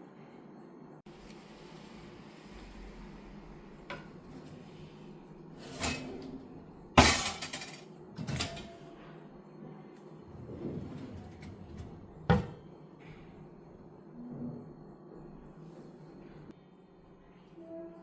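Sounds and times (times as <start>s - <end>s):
glass clattering crash: 7.0s - 7.8s.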